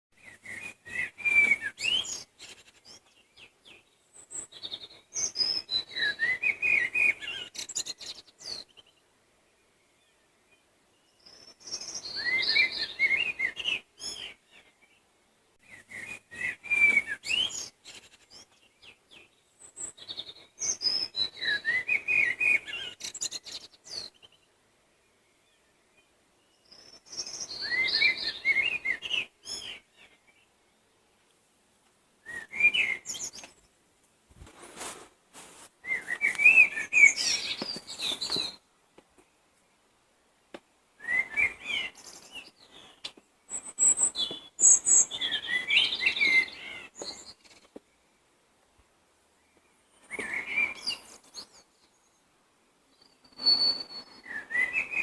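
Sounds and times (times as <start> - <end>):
songbird warbling: 35.8 - 38.6.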